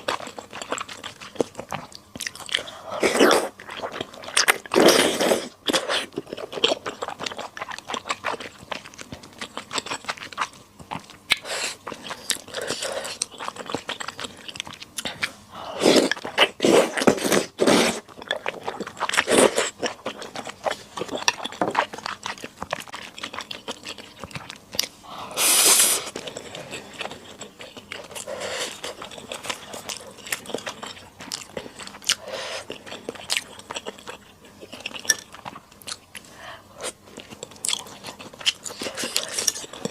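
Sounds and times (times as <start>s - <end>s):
person chewing and crunching: 0.0s - 39.9s.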